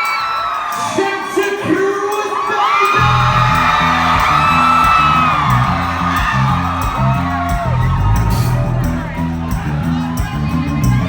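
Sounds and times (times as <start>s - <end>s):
crowd whooping and cheering: 0.0s - 11.0s
low bass riff: 3.0s - 11.0s.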